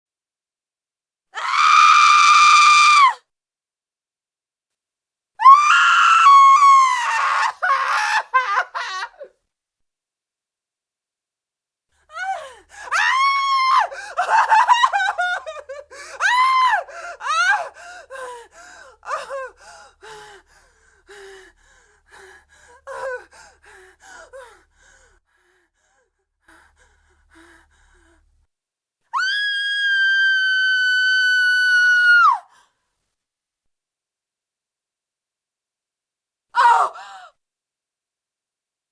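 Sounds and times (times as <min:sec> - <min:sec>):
woman screaming in terror: 0:01.4 - 0:03.2, 0:05.4 - 0:09.3, 0:12.8 - 0:15.6, 0:16.2 - 0:17.7, 0:29.2 - 0:32.5, 0:36.6 - 0:37.1
woman gasping: 0:12.1 - 0:13.0, 0:13.8 - 0:14.2, 0:15.7 - 0:28.4.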